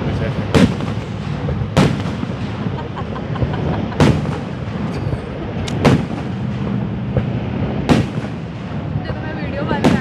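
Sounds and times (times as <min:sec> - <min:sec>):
background rumble: 0:00.0 - 0:10.0
fireworks bursting with loud bangs: 0:00.0 - 0:10.0
small firework crack: 0:00.5 - 0:02.8, 0:04.0 - 0:08.8.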